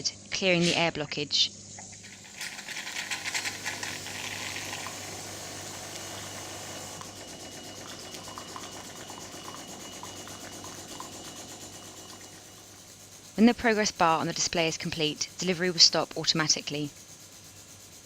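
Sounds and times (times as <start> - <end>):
coffee machine pump humming: 1.8 - 16.6
hot water pouring into a cup: 2.0 - 12.9.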